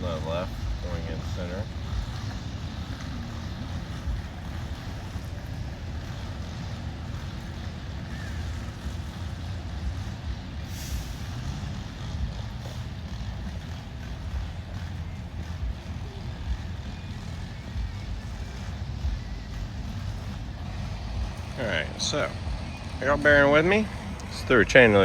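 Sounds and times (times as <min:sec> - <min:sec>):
traffic rumble: 0:00.0 - 0:25.0
air hiss: 0:10.6 - 0:11.6.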